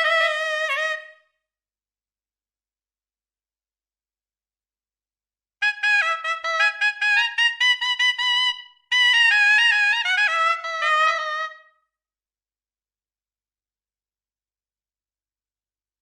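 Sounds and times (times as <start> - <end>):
reedy wind instrument melody: 0.0 - 1.2, 5.6 - 11.8.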